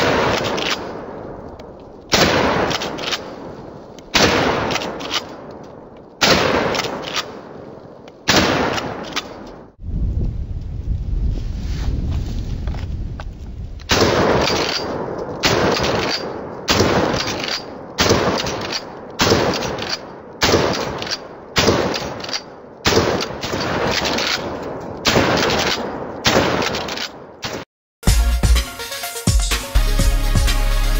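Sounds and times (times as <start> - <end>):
shotgun blasts with echo: 0.0 - 9.8, 13.9 - 27.7.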